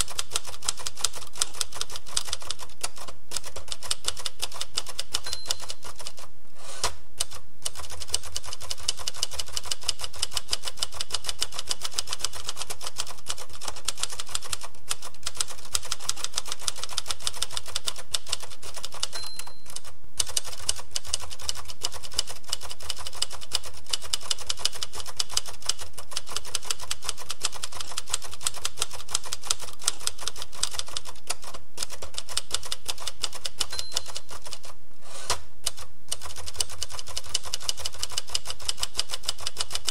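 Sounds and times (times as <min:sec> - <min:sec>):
typewriter keys typing: 0:00.0 - 0:39.9
high ding: 0:05.3 - 0:05.7, 0:19.2 - 0:19.7, 0:33.7 - 0:34.2.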